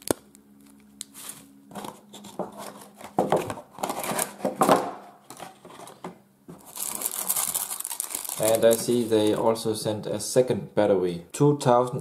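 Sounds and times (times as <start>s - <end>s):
plastic packaging rustling: 0.0s - 9.6s.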